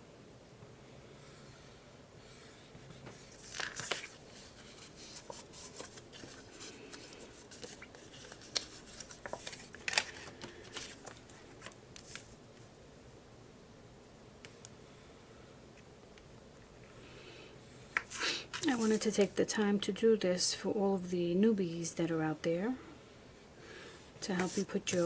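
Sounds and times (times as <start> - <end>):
paper rustling and sliding: 2.4 - 12.4, 18.0 - 19.3, 24.2 - 25.0.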